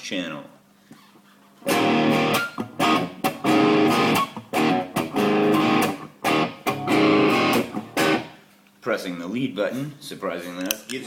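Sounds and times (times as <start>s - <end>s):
overdriven electric guitar chords: 1.7s - 8.4s.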